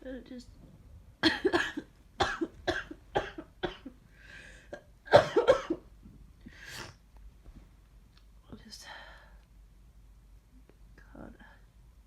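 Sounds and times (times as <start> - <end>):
person coughing: 1.2 - 4.0, 4.7 - 5.9.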